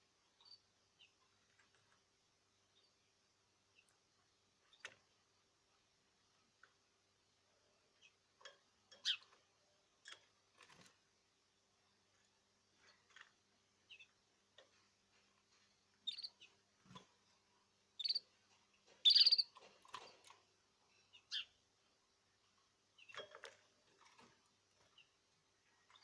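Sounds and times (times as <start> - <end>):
birds chirping: 16.0 - 16.6, 18.0 - 18.3, 18.9 - 19.6.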